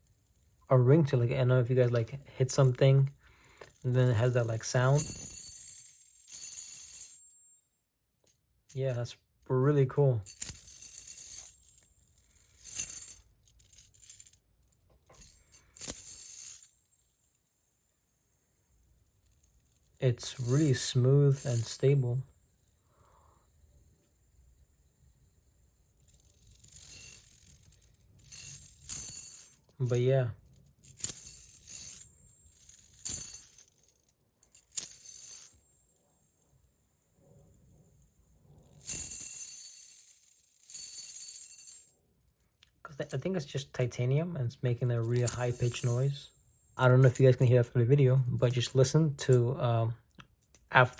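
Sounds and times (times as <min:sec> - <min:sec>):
fidget spinner metallic clinks: 0:01.8 - 0:09.1, 0:10.2 - 0:43.7, 0:44.8 - 0:47.5
bright metallic rattle: 0:10.2 - 0:42.0, 0:44.9 - 0:47.6
thin high-pitched ringing: 0:15.1 - 0:23.4, 0:45.0 - 0:47.5.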